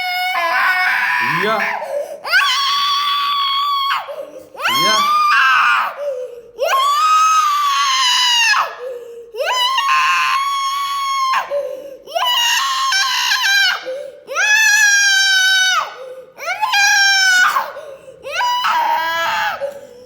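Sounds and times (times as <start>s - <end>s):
child screaming: 2.3s - 6.0s, 6.6s - 8.8s, 9.4s - 11.5s, 12.2s - 19.8s
child gasping: 17.7s - 18.3s.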